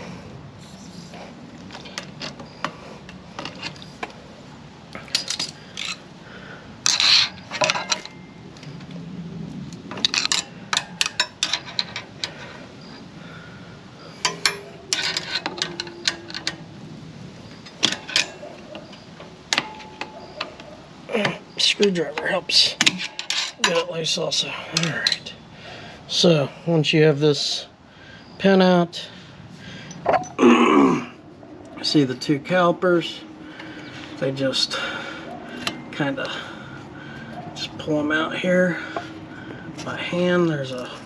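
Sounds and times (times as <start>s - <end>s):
hand tools clinking on metal: 5.0s - 6.0s, 6.8s - 8.4s, 9.9s - 12.5s, 14.1s - 16.7s, 17.5s - 25.4s, 29.8s - 30.7s.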